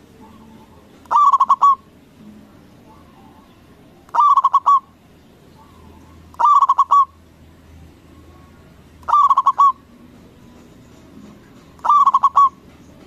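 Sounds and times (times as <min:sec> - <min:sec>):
dove cooing: 0:00.2 - 0:01.9, 0:04.1 - 0:04.9, 0:05.6 - 0:07.2, 0:09.1 - 0:09.9, 0:11.8 - 0:12.7.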